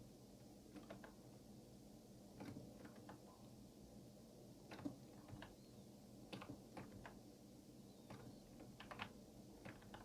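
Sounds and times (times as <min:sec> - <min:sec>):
computer keyboard and mouse clicks: 0:00.7 - 0:01.2, 0:04.7 - 0:05.6, 0:06.3 - 0:07.2, 0:08.1 - 0:10.0.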